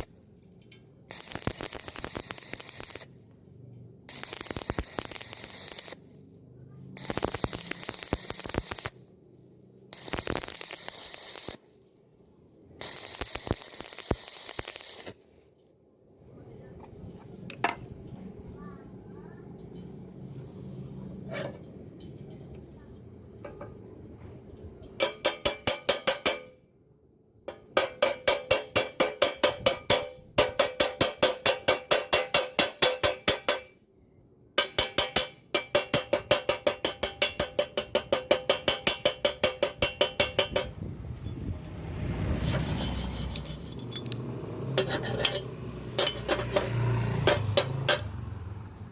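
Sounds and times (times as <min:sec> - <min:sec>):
rough scraping and knocks: 0:21.2 - 0:22.8, 0:42.1 - 0:48.3
hammer rapping on steel tubing: 0:24.9 - 0:26.6, 0:27.5 - 0:33.8, 0:34.6 - 0:40.8, 0:44.8 - 0:48.1.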